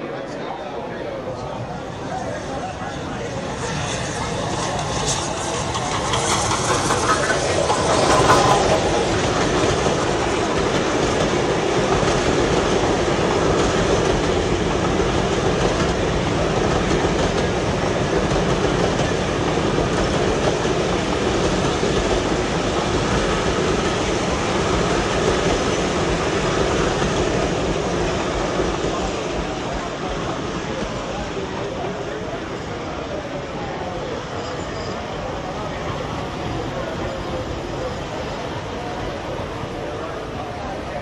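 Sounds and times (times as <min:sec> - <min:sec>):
model train wheels on rails: 0:00.8 - 0:41.0.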